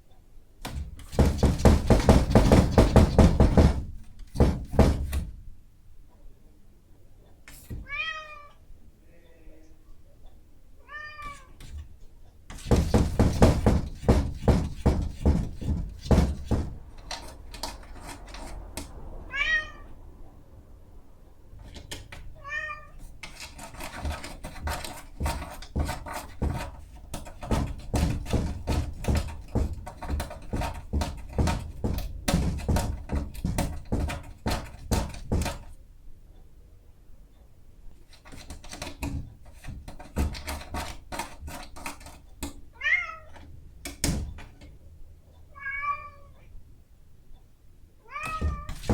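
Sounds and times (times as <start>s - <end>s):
cat claws scratching a door: 0.6s - 5.4s, 11.3s - 11.9s, 12.5s - 19.1s, 21.5s - 35.8s, 38.0s - 42.6s, 43.2s - 44.8s, 48.2s - 48.9s
cat meowing: 7.8s - 8.6s, 10.8s - 11.6s, 19.3s - 20.0s, 22.4s - 23.0s, 42.8s - 43.4s, 45.5s - 46.5s, 48.0s - 48.8s.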